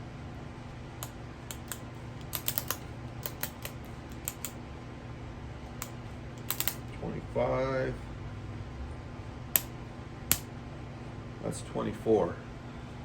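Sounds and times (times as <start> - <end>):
steady low hum: 0.0 - 13.0
torque wrench clicking: 1.0 - 4.6, 5.8 - 6.8.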